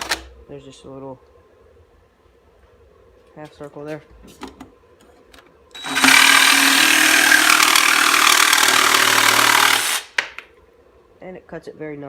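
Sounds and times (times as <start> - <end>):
jigsaw cutting plywood: 5.8 - 10.1.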